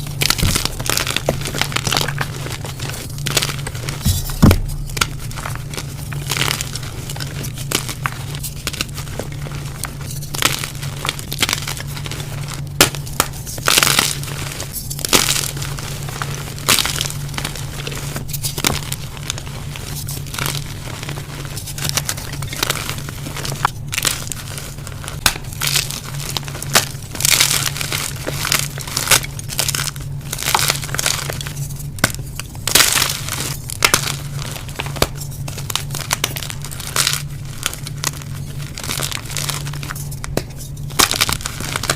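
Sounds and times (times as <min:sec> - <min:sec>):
chalk being crushed: 0:00.0 - 0:41.9
steady low hum: 0:00.0 - 0:41.9.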